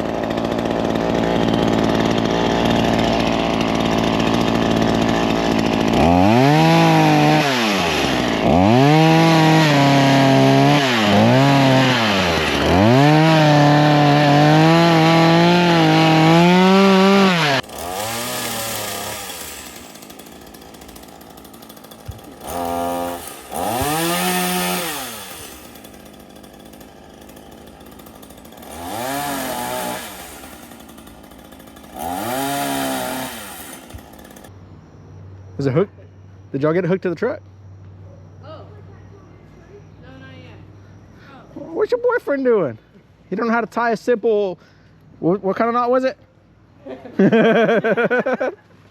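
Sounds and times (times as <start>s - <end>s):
chainsaw cutting branches: 0.0s - 34.5s, 47.2s - 48.6s.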